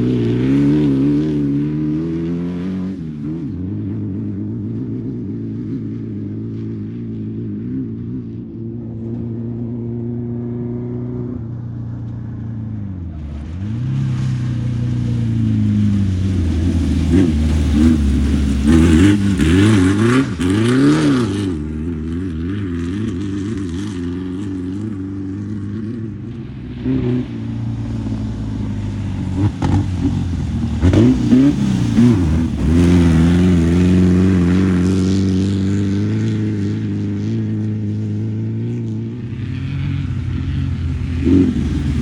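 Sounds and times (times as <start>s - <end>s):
tyre and dirt noise: 0.0s - 42.0s
race vehicle engine revving: 13.0s - 42.0s.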